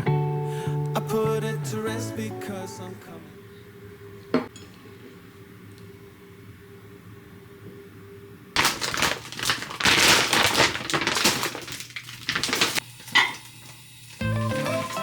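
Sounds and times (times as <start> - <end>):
background music: 0.0 - 3.4, 14.2 - 15.0
rapid clattering and crunching: 8.6 - 13.4.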